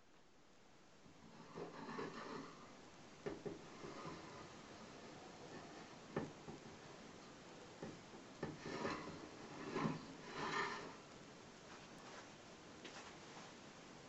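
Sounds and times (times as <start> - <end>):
rubbing of things handled: 1.2 - 2.8, 7.8 - 11.0.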